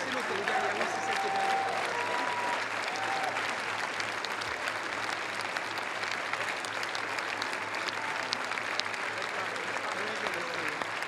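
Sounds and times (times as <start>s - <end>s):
audience applauding: 0.0s - 11.0s.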